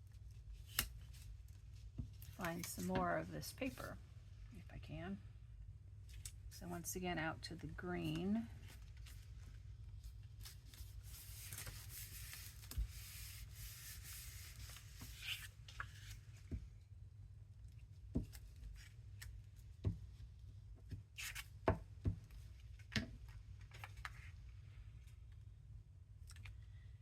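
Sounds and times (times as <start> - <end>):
paper rubbing and sliding: 10.4 - 16.2.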